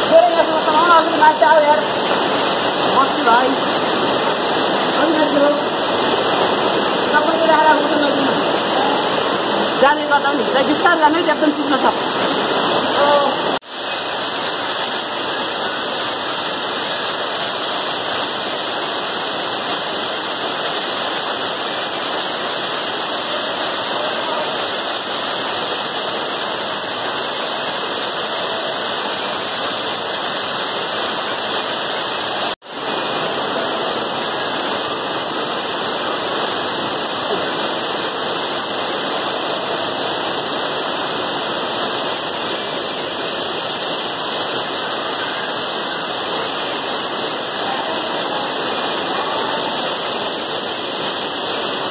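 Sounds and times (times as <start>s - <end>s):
waterfall pouring: 0.0s - 51.9s.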